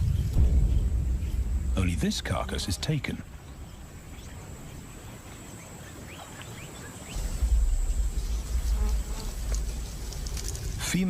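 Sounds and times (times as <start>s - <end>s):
loud low rumble: 0.0s - 4.3s, 7.2s - 11.0s
high insect trill: 6.9s - 11.0s.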